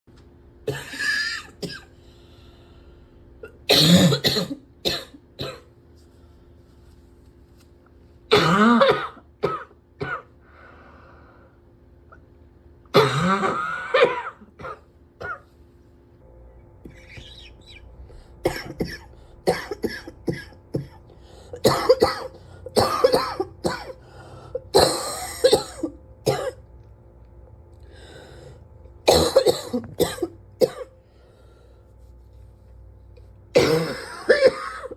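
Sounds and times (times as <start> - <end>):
person coughing harshly: 0.6 - 2.0, 3.4 - 5.7, 8.3 - 10.3, 12.9 - 15.5, 18.4 - 21.0, 21.6 - 26.6, 29.0 - 30.9, 33.5 - 34.9.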